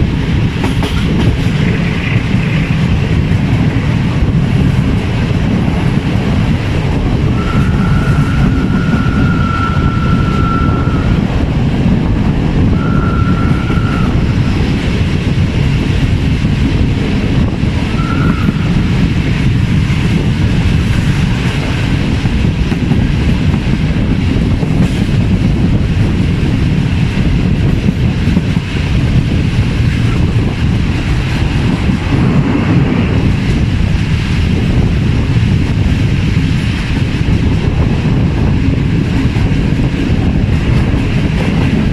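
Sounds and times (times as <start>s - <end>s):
train wheels rumbling on rails: 0.0s - 41.9s
train whistle blasts: 7.4s - 11.1s, 12.8s - 14.2s, 18.0s - 18.7s.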